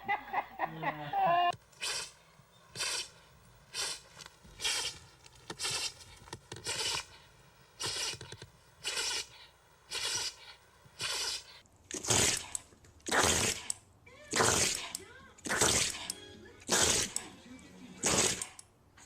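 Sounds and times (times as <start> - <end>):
animal sneezing: 1.8 - 5.0, 5.6 - 7.2, 7.8 - 8.2, 8.8 - 12.5, 13.1 - 16.1, 16.7 - 17.2, 18.0 - 18.6.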